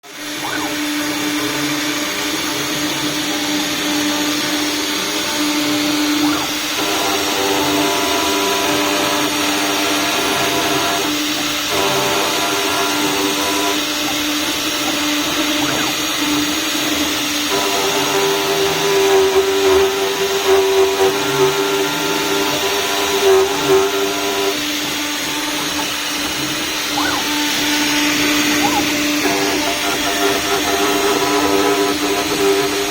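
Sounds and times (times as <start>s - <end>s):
router whining: 0.0s - 32.9s
spindle high whine: 21.3s - 31.3s.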